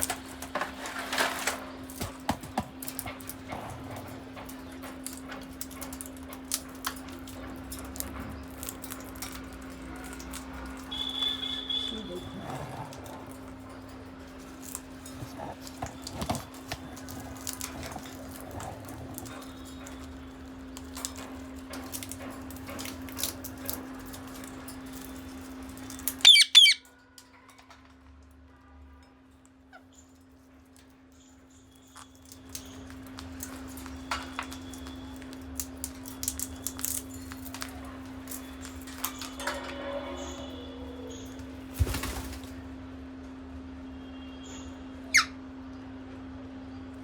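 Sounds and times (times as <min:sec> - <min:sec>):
parrots cracking peanut shells: 0:00.0 - 0:28.1, 0:29.7 - 0:39.8
parrot squawk: 0:26.2 - 0:26.9, 0:45.1 - 0:45.4.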